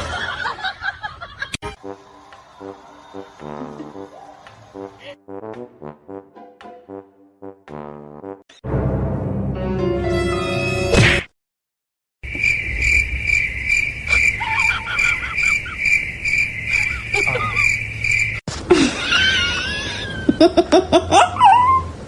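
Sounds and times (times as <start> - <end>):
high pulsing chirping: 12.2 - 18.4
short rising calls: 12.3 - 18.4.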